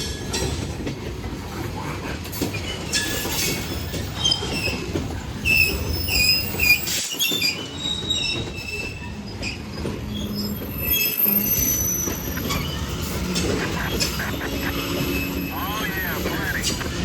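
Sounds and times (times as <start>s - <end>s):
freight train wheels rumbling: 0.0s - 17.0s
high-pitched wheel squeals: 10.1s - 13.5s.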